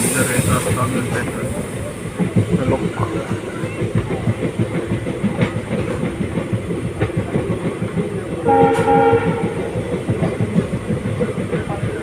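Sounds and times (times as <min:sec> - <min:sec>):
train clattering rumble: 0:00.0 - 0:12.0
train horn: 0:08.4 - 0:09.7.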